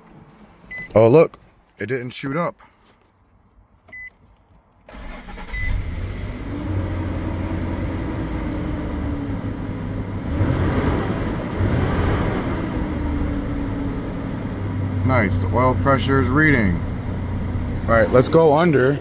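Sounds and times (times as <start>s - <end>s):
short beep: 3.9s - 4.2s, 5.5s - 5.8s
car engine starting and idling: 4.8s - 19.0s.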